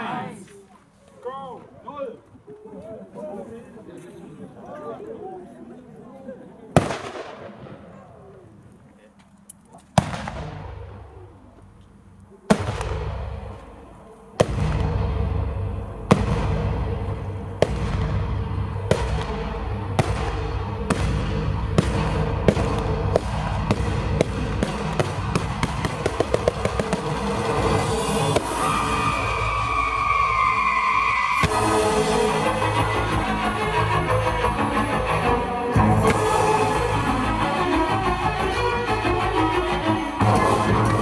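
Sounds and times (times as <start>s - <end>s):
fireworks bangs: 6.8s - 8.6s, 9.8s - 32.8s
firework crackling rumble: 6.8s - 8.8s, 9.9s - 34.3s.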